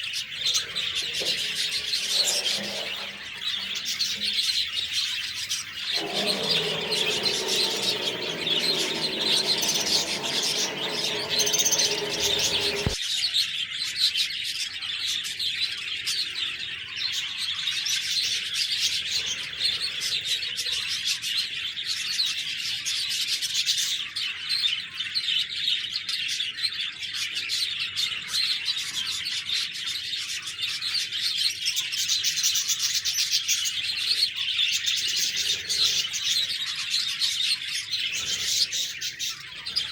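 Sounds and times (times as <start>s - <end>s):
budgerigars chattering and chirping: 0.0s - 13.0s.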